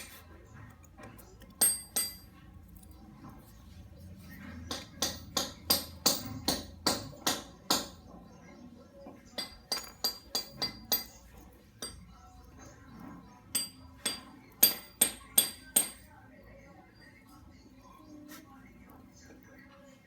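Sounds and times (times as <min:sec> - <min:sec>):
hammer striking chain pin: 0:01.6 - 0:02.3, 0:04.7 - 0:08.0, 0:09.4 - 0:11.2, 0:13.6 - 0:16.1.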